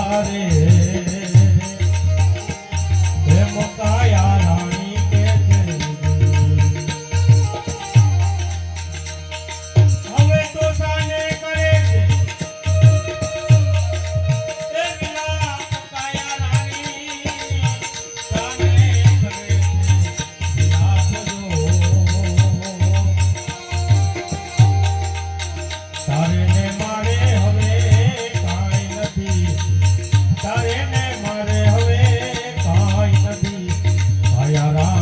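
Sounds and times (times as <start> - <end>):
held melody line: 0.0 - 35.0
hand drum beat: 16.2 - 35.0.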